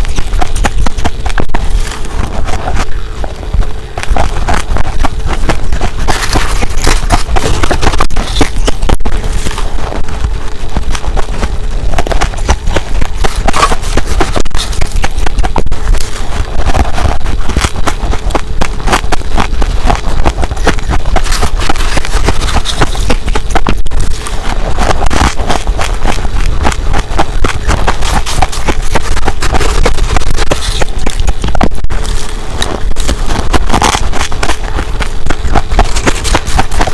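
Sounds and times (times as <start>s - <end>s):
ice being bitten crunching: 5.3s - 8.7s.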